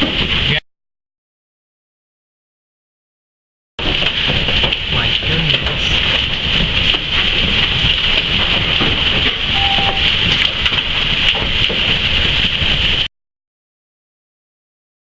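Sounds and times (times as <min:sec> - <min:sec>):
hail and heavy rain: 0:00.0 - 0:00.6, 0:03.8 - 0:13.1.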